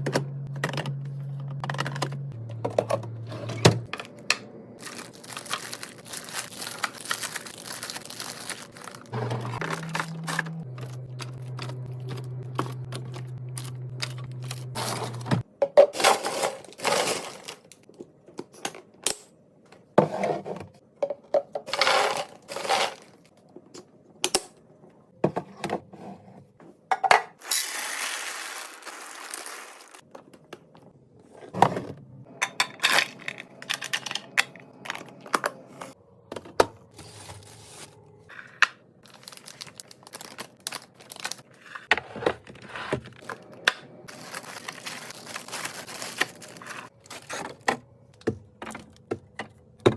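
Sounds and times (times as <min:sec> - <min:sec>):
items clinking and knocking: 0:00.0 - 0:19.0, 0:38.4 - 0:49.9
packaging crinkling: 0:04.8 - 0:12.6, 0:27.5 - 0:30.0, 0:39.0 - 0:41.5, 0:44.1 - 0:47.6.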